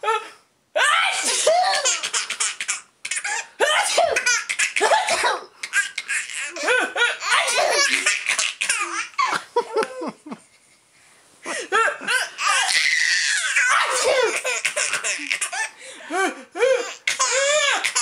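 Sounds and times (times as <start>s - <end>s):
baby laughing: 1.5s - 10.0s, 12.1s - 15.8s, 16.7s - 18.0s.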